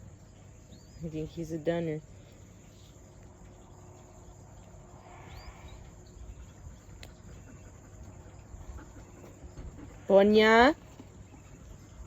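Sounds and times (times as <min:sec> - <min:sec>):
low rumble and hiss: 0:00.0 - 0:12.0
faint chirp: 0:02.1 - 0:08.2.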